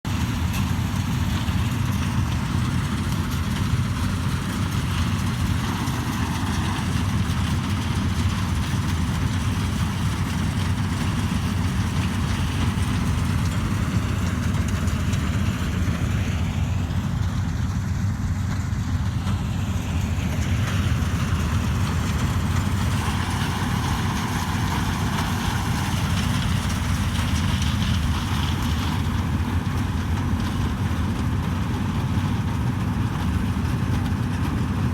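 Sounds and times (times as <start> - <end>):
diesel engine running: 0.0 - 34.9
machinery hiss: 21.2 - 28.5.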